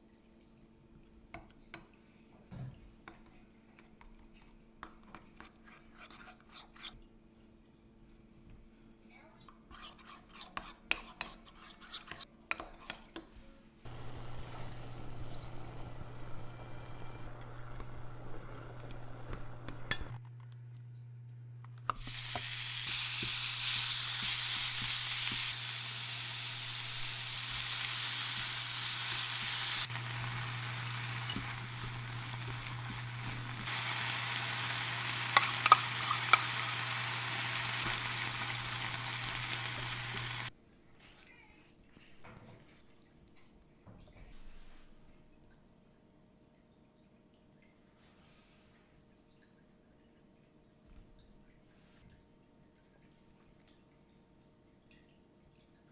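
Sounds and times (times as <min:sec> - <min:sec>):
food sizzling in a frying pan: 0:13.9 - 0:20.2, 0:22.0 - 0:40.5
steady low hum: 0:13.9 - 0:21.8.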